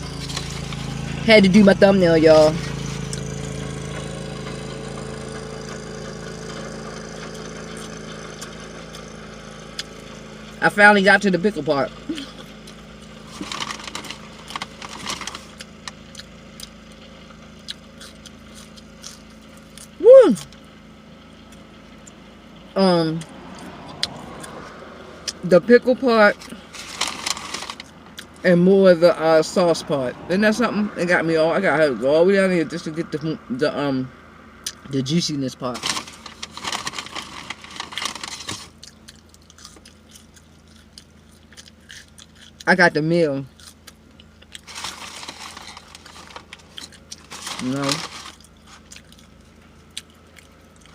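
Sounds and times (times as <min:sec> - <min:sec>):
crunching food: 0:00.0 - 0:01.2, 0:02.6 - 0:10.2, 0:12.0 - 0:20.8, 0:26.3 - 0:28.4, 0:35.7 - 0:50.9
chewing and lip smacking: 0:15.5 - 0:16.8, 0:17.6 - 0:20.0, 0:38.7 - 0:42.7, 0:48.4 - 0:50.9.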